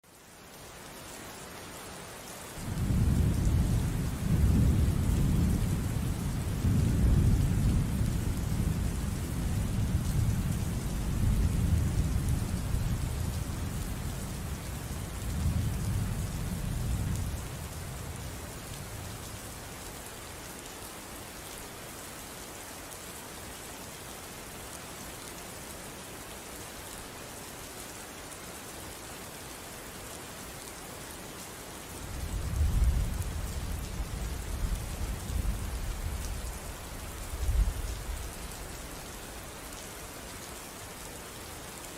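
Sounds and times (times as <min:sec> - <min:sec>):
thunder rumbling: 0:02.7 - 0:14.6
rain hissing: 0:31.4 - 0:41.9.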